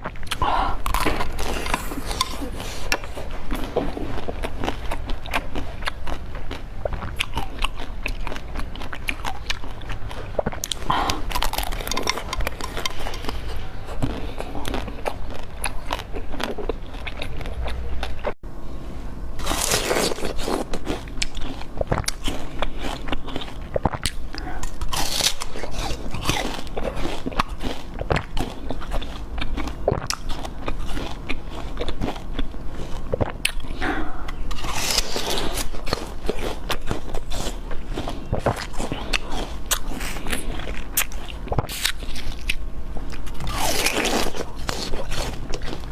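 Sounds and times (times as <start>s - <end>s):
crisp bites and crunching: 0.0s - 18.3s, 19.4s - 45.9s
wet chewing: 0.0s - 18.4s, 19.4s - 45.9s.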